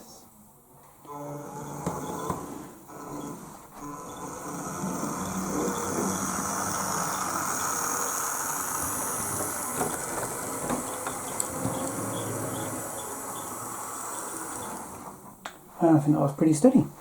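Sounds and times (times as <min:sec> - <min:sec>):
small electric motor running: 0:01.1 - 0:15.2
model train wheels clicking: 0:04.2 - 0:15.0.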